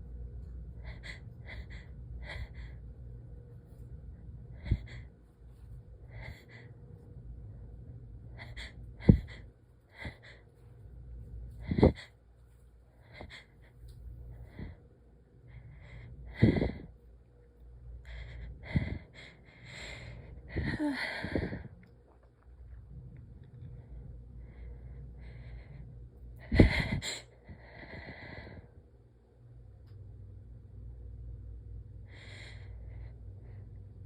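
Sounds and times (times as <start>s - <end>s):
gasping in-breaths: 15.8s - 16.9s.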